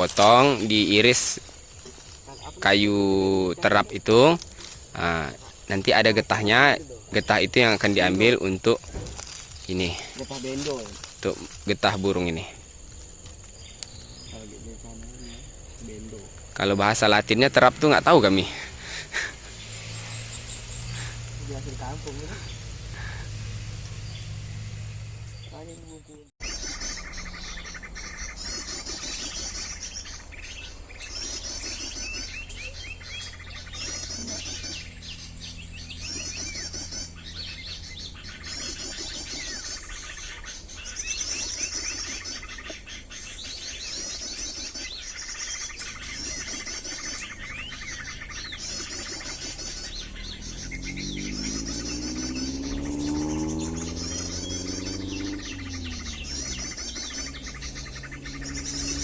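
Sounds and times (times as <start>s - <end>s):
birds trilling chirps: 0.0s - 59.0s
steady low hum: 11.0s - 59.0s
low droning tone rising: 13.9s - 28.9s, 47.2s - 59.0s.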